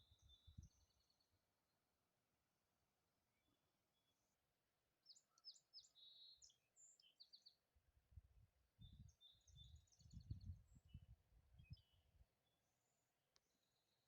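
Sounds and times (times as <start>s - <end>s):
small birds chirping: 5.1s - 7.6s, 8.8s - 14.0s.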